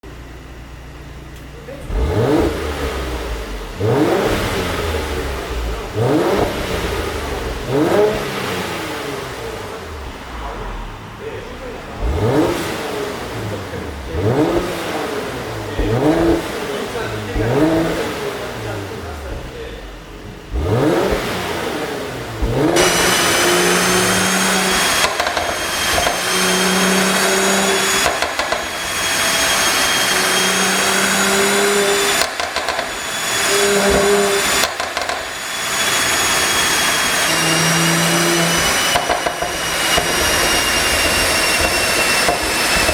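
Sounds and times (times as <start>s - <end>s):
car engine revving: 0.1s - 42.9s
exhaust crackles and pops: 22.4s - 30.8s, 31.5s - 37.4s, 38.0s - 42.9s
steady high whine: 22.4s - 42.9s.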